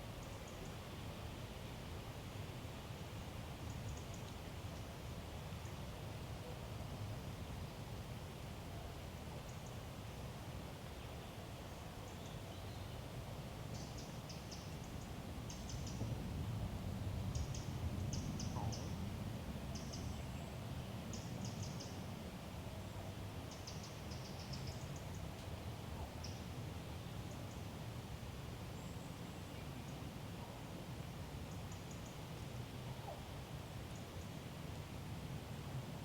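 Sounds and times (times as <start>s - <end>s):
low woodland rumble: 13.8s - 34.5s.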